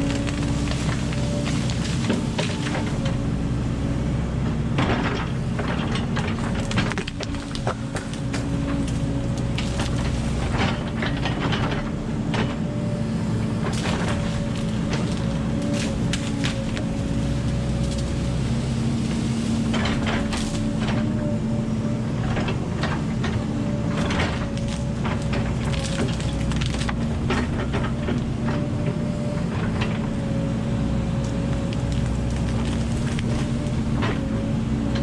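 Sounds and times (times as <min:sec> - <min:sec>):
excavator diesel engine running: 0:00.0 - 0:35.0
machine clanks and knocks: 0:04.8 - 0:09.0, 0:09.6 - 0:12.6.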